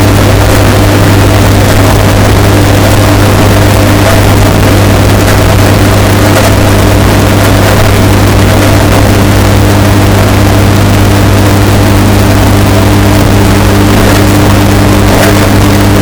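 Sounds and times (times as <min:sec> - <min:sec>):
washing machine motor hum: 0:00.0 - 0:16.0.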